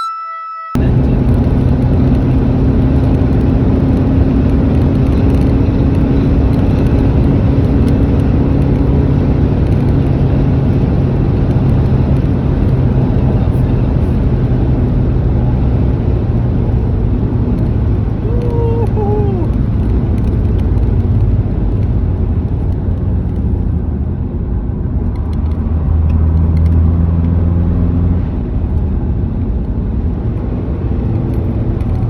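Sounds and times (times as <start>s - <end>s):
diesel engine running: 0.8s - 26.0s
tyre and road noise: 0.8s - 32.0s.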